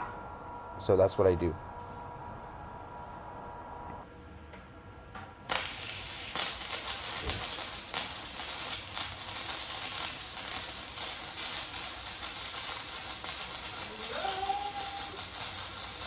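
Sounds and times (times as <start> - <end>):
welding arc crackling: 5.5 - 16.0.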